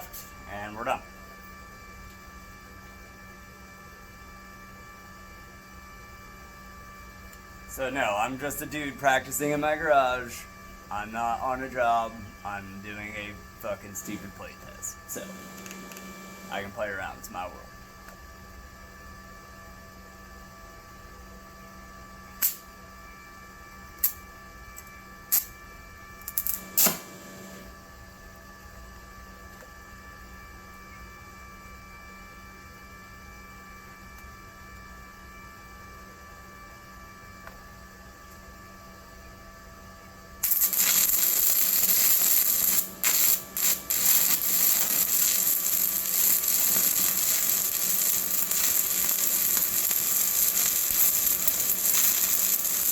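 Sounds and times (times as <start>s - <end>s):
electrical hum: 0.0s - 52.9s
welding arc crackling: 7.7s - 10.4s, 13.0s - 17.3s, 26.2s - 27.7s, 40.4s - 52.9s.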